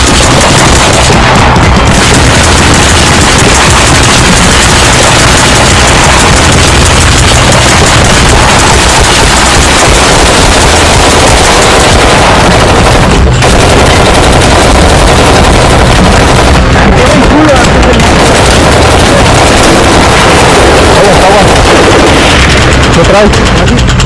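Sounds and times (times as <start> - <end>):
rapid machine-gun fire: 0.0 - 24.0.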